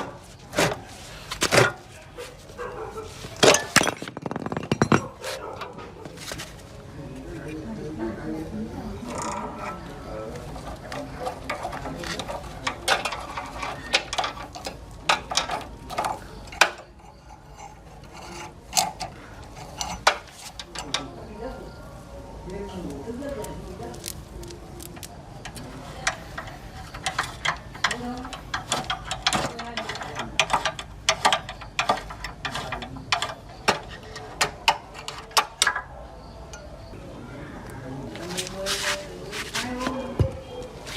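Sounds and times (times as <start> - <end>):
small metal parts clinking: 3.3 - 5.2
sharp clicks and knocks: 3.4 - 5.2.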